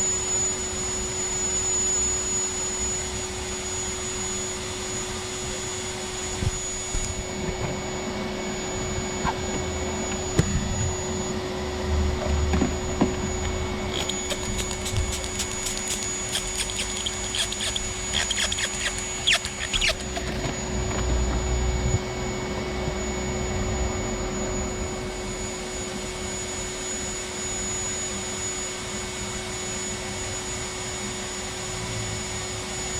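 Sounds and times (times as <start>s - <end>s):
shop vac whining: 0.0s - 28.0s.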